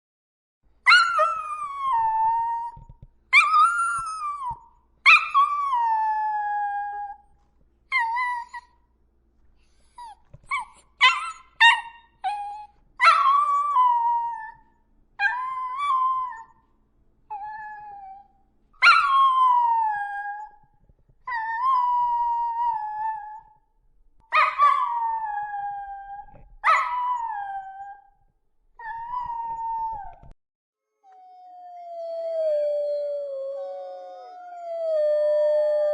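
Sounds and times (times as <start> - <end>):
dog yipping and whimpering: 9.8 - 14.6
dog howling: 24.4 - 28.1, 31.0 - 35.9.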